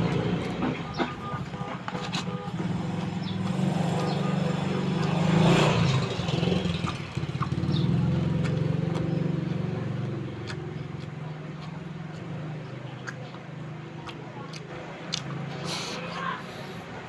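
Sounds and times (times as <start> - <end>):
motor engine running: 2.8 - 14.0.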